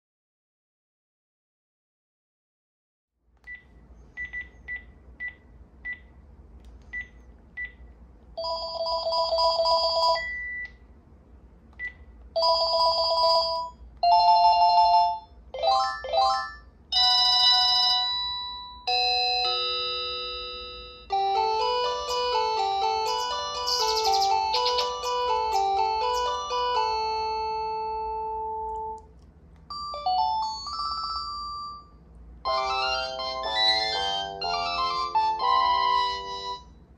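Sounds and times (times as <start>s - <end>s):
electronic phone ringtones: 8.4s - 10.6s, 12.4s - 29.0s, 29.7s - 36.7s.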